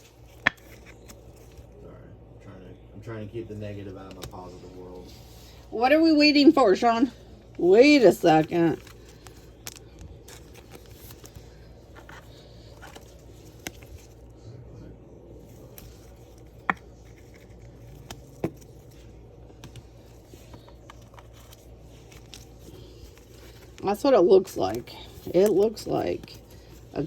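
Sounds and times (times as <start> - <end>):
low room hum: 0.0 - 27.0
trading cards clicking and tapping: 0.3 - 1.2.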